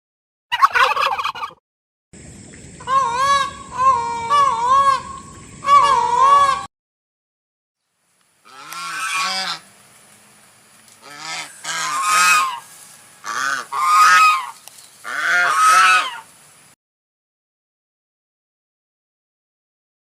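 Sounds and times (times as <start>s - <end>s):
geese honking: 0.5s - 1.6s, 2.8s - 6.7s, 8.4s - 9.8s, 10.9s - 16.3s.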